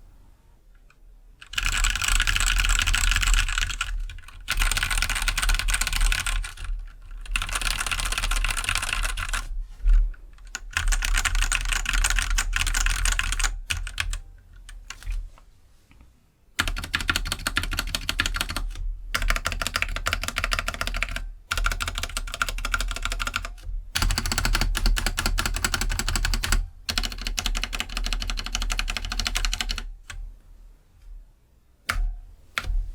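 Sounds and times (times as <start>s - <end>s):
mechanical keyboard typing: 1.4s - 9.5s, 10.4s - 15.2s, 16.6s - 30.2s
stabilized keys pressed: 31.8s - 32.9s.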